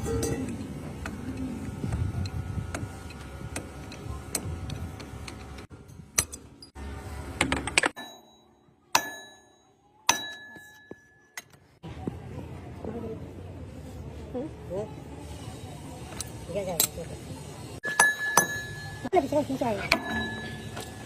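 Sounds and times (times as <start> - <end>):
busy background noise: 0.0 - 21.0
ringing metallic strikes: 8.0 - 11.2.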